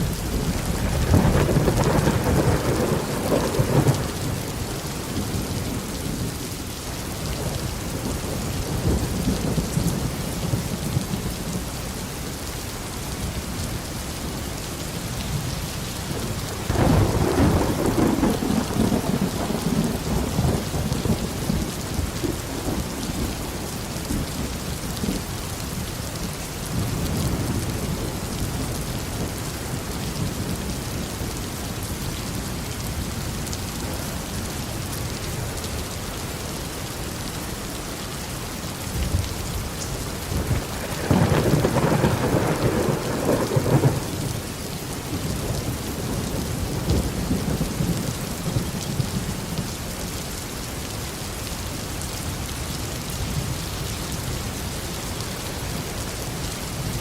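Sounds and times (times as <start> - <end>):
thunder rumbling: 0.0 - 6.4, 16.1 - 25.2, 39.0 - 44.4
steady rain falling: 0.0 - 57.0.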